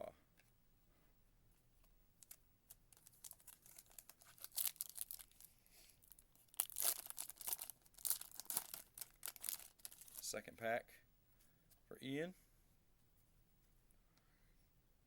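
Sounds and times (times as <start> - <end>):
foil wrapper crinkling and tearing: 2.2 - 10.3.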